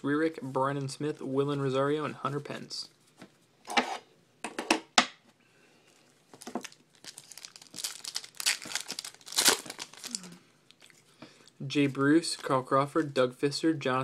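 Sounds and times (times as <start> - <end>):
card pack wrapper tearing: 6.4 - 10.8.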